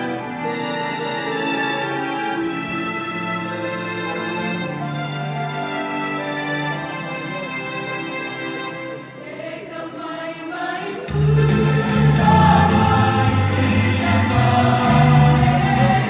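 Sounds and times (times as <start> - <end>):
choir singing folk songs: 9.0 - 16.0.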